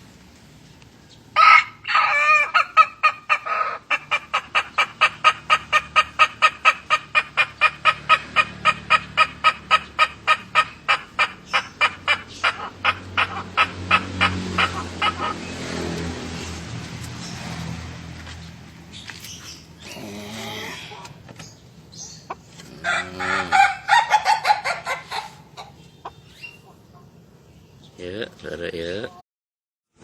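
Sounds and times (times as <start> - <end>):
rooster crowing laugh-like calls: 1.4 - 15.5, 22.7 - 25.8.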